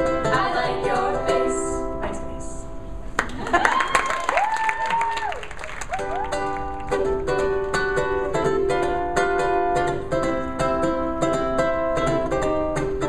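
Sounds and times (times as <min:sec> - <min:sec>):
strummed acoustic guitar chords: 0:06.4 - 0:13.0.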